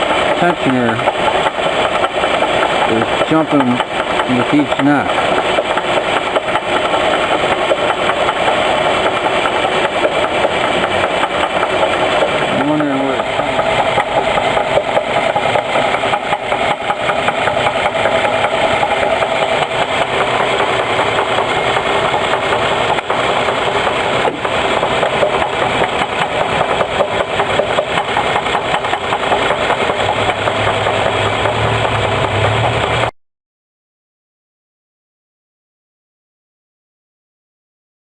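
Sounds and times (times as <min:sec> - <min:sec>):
car engine running: 0:00.0 - 0:33.1
rapid knock inside engine: 0:00.0 - 0:33.1.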